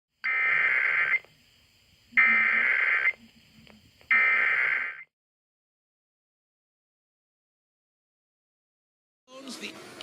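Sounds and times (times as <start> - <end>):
buzzing digital data tones: 0.2 - 1.3, 2.1 - 5.1.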